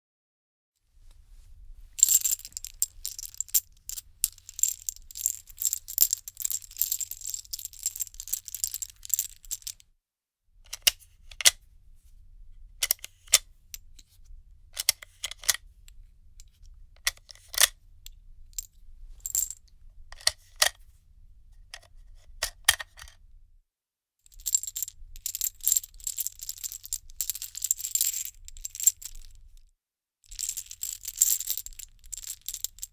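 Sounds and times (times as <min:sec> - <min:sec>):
metal cartridges clinking and rattling: 0:02.0 - 0:09.8, 0:14.8 - 0:15.6, 0:17.0 - 0:17.7, 0:18.6 - 0:19.6, 0:20.2 - 0:20.8, 0:22.4 - 0:23.1, 0:24.3 - 0:29.3, 0:30.3 - 0:32.9.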